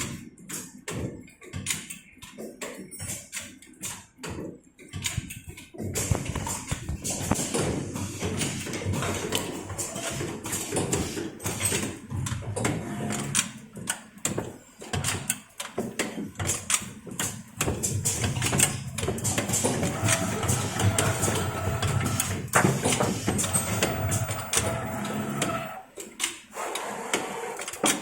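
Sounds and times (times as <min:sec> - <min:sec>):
machine mechanism clicks and knocks: 0:00.0 - 0:28.0.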